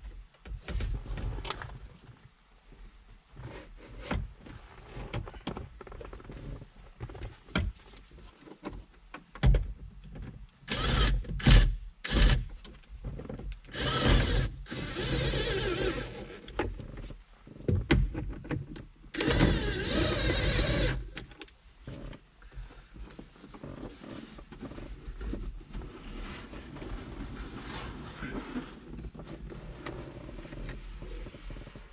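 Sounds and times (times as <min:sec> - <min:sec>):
cordless drill running: 0:13.8 - 0:16.3, 0:19.2 - 0:21.1.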